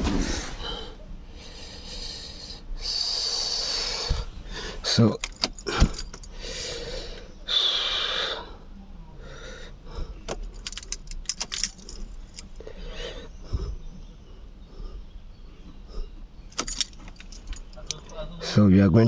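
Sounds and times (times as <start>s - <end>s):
breathy rustling hisses: 0.0s - 10.5s
light clicks and rattles: 5.0s - 6.4s, 10.2s - 12.6s, 16.5s - 18.2s.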